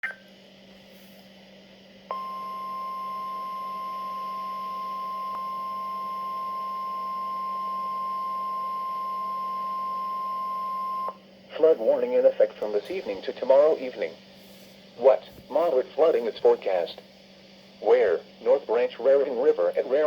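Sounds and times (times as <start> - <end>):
faint low hum: 0.0 - 20.0.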